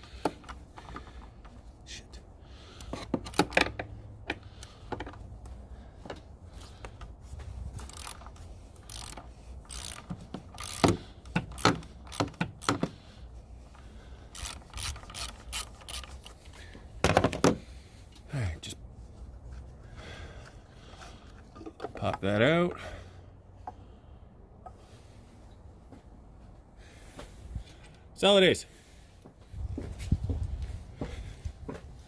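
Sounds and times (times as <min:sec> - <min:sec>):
ratchet clicks and clinks: 0:07.8 - 0:12.9, 0:14.3 - 0:16.6.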